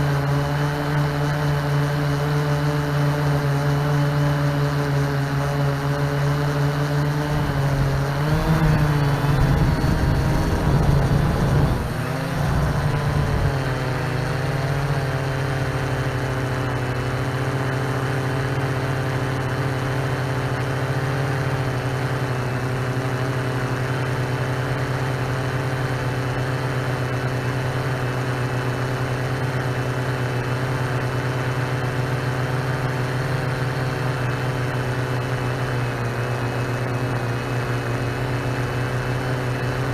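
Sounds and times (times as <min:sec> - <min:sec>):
drone motors humming: 0:04.4 - 0:24.3.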